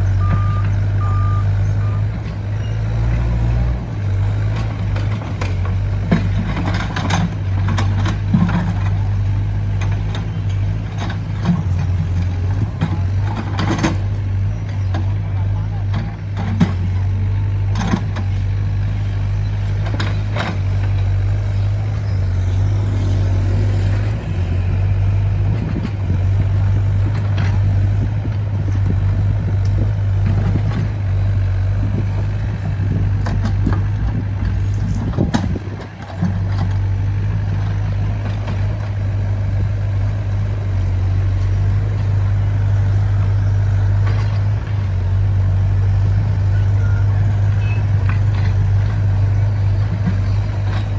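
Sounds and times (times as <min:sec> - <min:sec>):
excavator diesel engine running: 0:00.0 - 0:50.9
sharp knocks from excavator work: 0:32.0 - 0:36.8.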